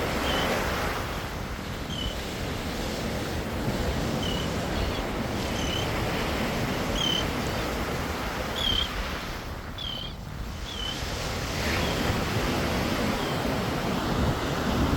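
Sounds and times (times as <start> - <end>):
surf washing in: 0.0 - 14.9
wind on microphone: 0.0 - 14.9
seagull calls: 8.6 - 8.9, 9.8 - 10.9.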